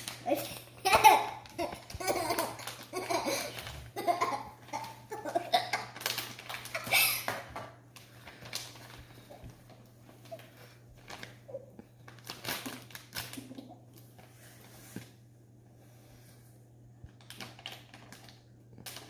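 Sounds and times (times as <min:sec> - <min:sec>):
children laughing and giggling: 0:00.3 - 0:06.0.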